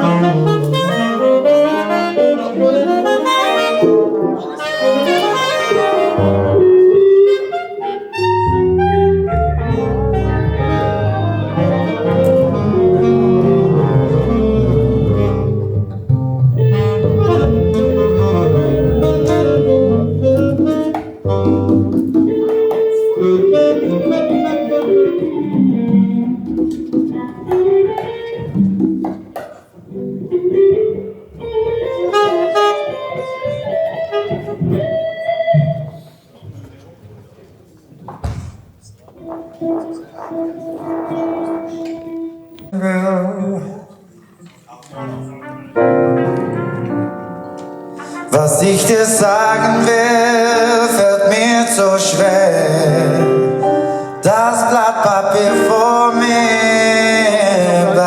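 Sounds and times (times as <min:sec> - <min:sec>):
saxophone melody: 0:00.0 - 0:29.2, 0:29.9 - 0:36.0, 0:39.1 - 0:43.6, 0:44.9 - 0:54.3
big band playing jazz: 0:00.0 - 0:36.1, 0:38.8 - 0:42.9, 0:44.9 - 0:58.0
bass: 0:08.3 - 0:20.7.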